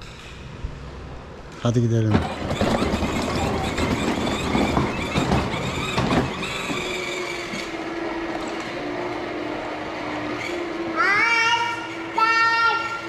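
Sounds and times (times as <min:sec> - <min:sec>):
plastic toy wheels rumbling: 0:02.2 - 0:07.8.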